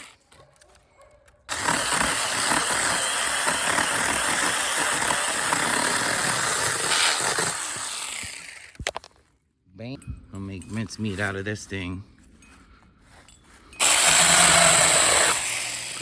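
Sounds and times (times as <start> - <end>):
cordless chainsaw cutting branch: 1.5 - 8.9, 13.8 - 16.0.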